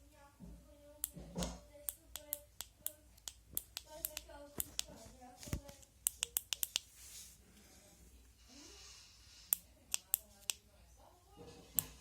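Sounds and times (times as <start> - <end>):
sharp clicks: 1.9 - 4.9, 5.5 - 6.8, 9.5 - 10.6.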